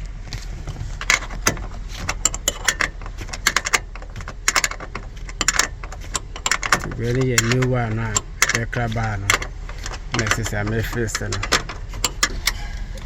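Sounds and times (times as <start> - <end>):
steady low hum: 0.0 - 13.0
metallic clicks and rattles: 0.6 - 13.0.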